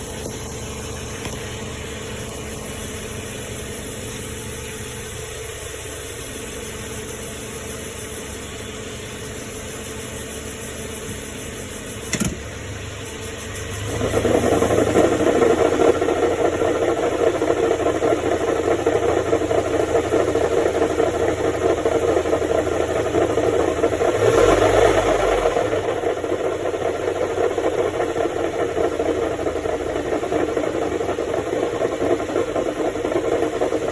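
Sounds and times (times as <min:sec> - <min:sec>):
car engine humming: 0:11.1 - 0:33.9
loud rough grinding: 0:13.8 - 0:33.9.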